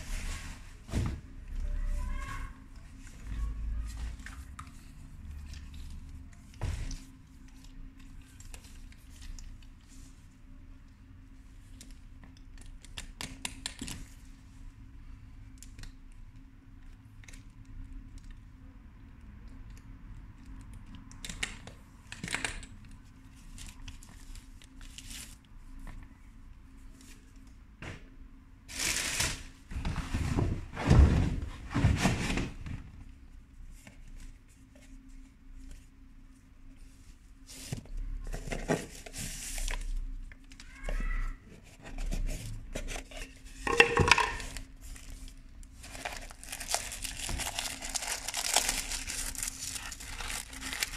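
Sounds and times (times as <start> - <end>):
faint steady hum: 0.0 - 50.9
wrapping rustling and tearing: 28.7 - 29.6, 44.4 - 50.9
handling noises: 40.6 - 50.9.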